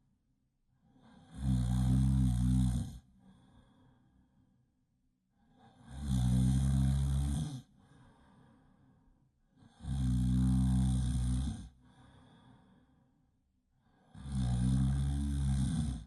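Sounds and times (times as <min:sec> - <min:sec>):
quiet breath: 0:00.7 - 0:16.0
person snoring loudly: 0:01.0 - 0:03.0, 0:05.8 - 0:07.7, 0:09.7 - 0:11.8, 0:14.1 - 0:16.0.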